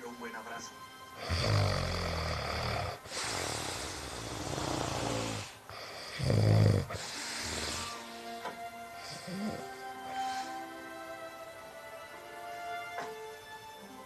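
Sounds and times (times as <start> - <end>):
person snoring: 1.2 - 8.3, 9.0 - 10.6.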